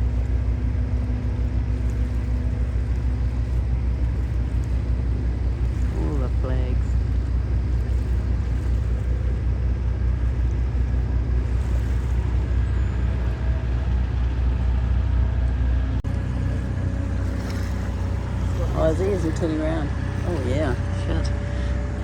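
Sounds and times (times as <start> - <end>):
boat engine rumbling: 0.0 - 22.0
water noise: 0.0 - 22.0
wind: 0.0 - 22.0.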